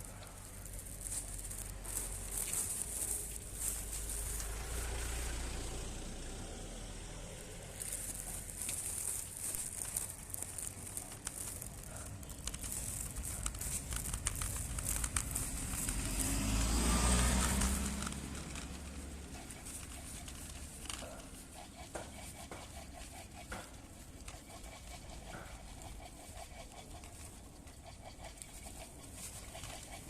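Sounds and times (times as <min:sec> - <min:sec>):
handlebar clicking and crackling: 0:07.3 - 0:21.5.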